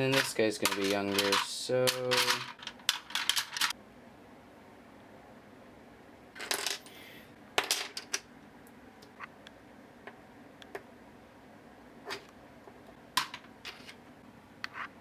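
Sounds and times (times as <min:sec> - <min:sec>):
plastic toy pieces clattering: 0:00.1 - 0:03.7.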